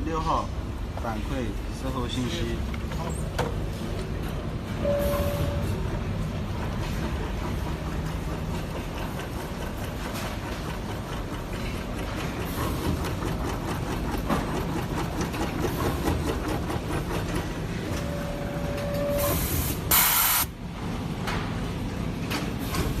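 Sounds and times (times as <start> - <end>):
machine mechanical clatter: 5.7 - 19.9
loud short hiss: 19.3 - 20.5.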